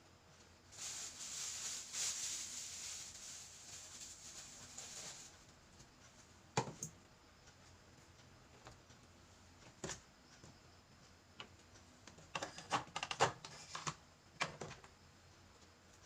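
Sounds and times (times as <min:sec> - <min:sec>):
rubbing noise with hiss: 0:00.7 - 0:05.4.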